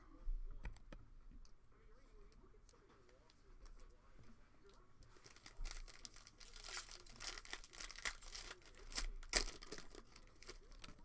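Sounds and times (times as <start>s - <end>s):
plastic wrapper tearing and crinkling: 5.1s - 11.0s.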